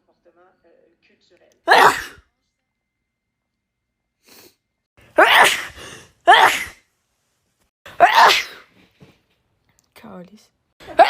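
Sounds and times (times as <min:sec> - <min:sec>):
person sneezing: 0:01.7 - 0:02.2, 0:05.2 - 0:06.8, 0:07.9 - 0:08.7.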